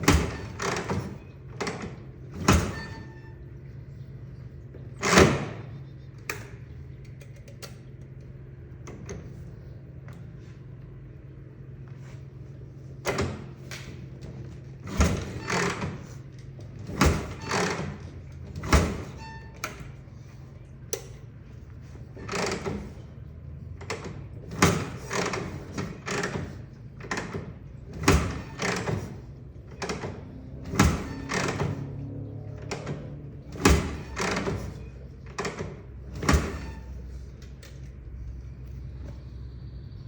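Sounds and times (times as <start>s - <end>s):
motorcycle kickstart thump: 0.0s - 3.2s, 23.8s - 32.0s, 32.6s - 37.9s.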